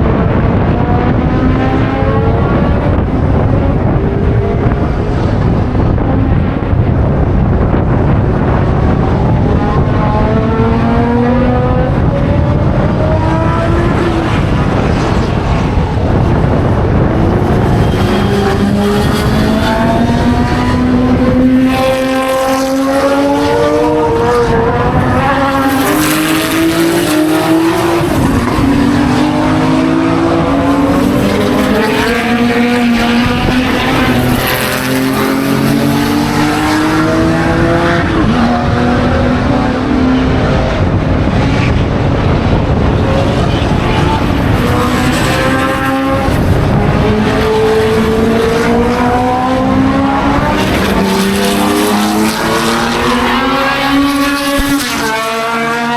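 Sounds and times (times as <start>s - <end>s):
racing car engines revving: 0.0s - 55.9s.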